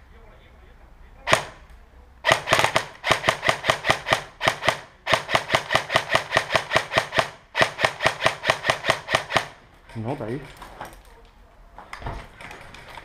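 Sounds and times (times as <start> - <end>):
airsoft gun firing: 1.3 - 1.6, 2.2 - 9.6.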